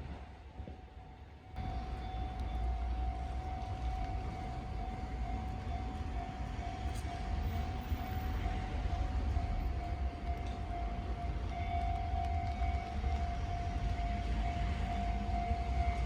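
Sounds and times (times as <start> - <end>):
level-crossing alarm dinging: 0.6 - 16.0.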